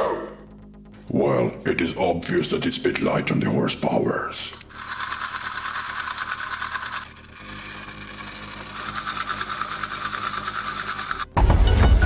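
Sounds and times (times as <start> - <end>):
music: 0.0 - 12.0
toy motor whirring: 4.4 - 11.4.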